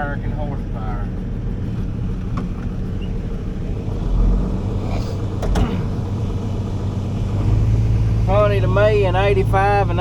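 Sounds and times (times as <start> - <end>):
truck diesel engine running: 0.0 - 10.0
cab rattles and clicks: 5.4 - 6.0.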